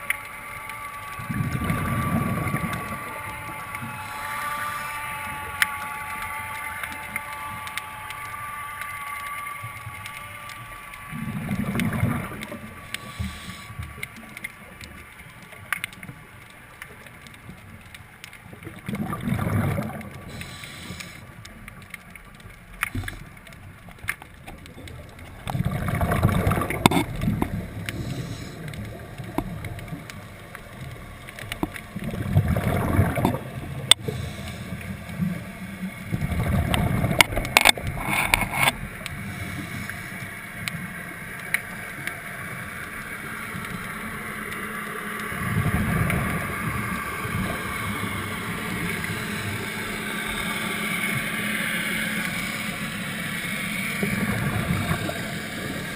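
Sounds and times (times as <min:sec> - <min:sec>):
faint steady whine: 0:00.0 - 0:55.9
bubbling exhalations: 0:18.8 - 0:20.6, 0:32.0 - 0:34.4.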